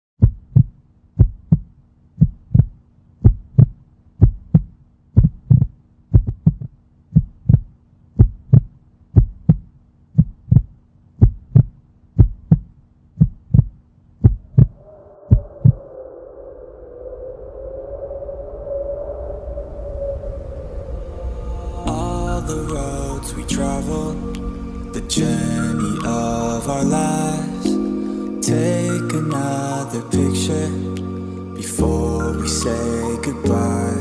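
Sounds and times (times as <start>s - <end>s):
heartbeat thumps: 0.2s - 15.8s
high sustained droning tone: 14.8s - 34.0s.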